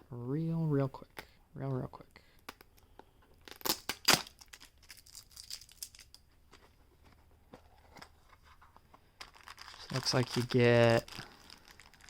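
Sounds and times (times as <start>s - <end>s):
packaging crackling: 3.5s - 6.2s, 9.2s - 12.0s.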